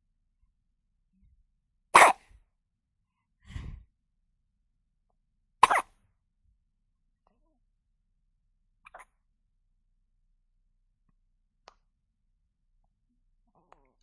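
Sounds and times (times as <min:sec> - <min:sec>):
baby hiccuping: 0:02.0 - 0:02.2, 0:05.6 - 0:05.9.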